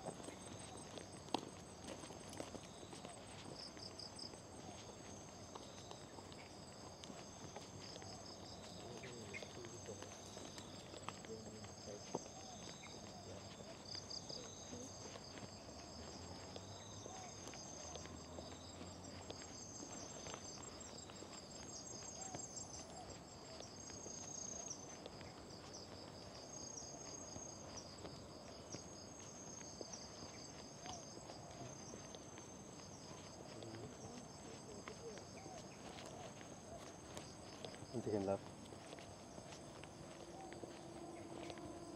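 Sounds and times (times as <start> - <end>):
insects trilling: 0.0 - 41.9
soft footsteps on dirt path: 0.0 - 41.9.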